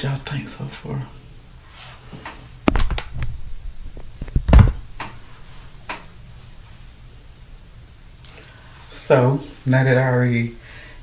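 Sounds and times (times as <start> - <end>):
dull thumps and knocks: 2.7 - 5.2.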